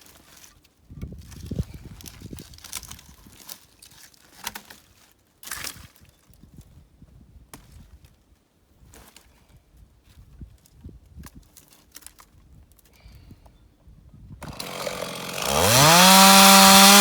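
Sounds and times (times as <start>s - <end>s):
scraping rustle: 0.0s - 5.2s.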